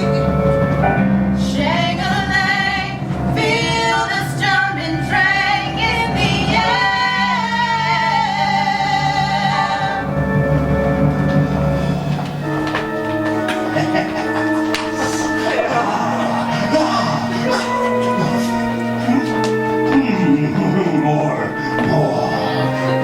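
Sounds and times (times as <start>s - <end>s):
instrumental accompaniment: 0.0s - 23.0s
woman singing: 1.4s - 10.2s.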